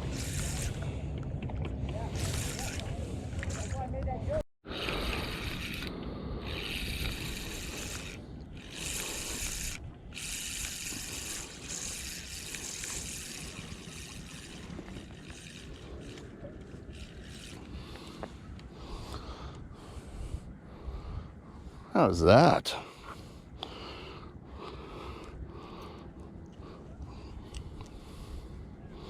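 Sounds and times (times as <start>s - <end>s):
wind rumbling on microphone: 0.0s - 21.9s
tide water running: 4.7s - 28.6s.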